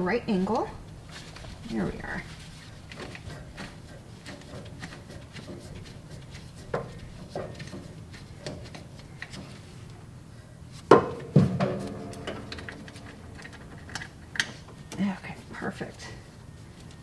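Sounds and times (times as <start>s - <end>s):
loud ringing knocks: 10.9s - 14.9s
metal tools clinking: 11.3s - 15.0s.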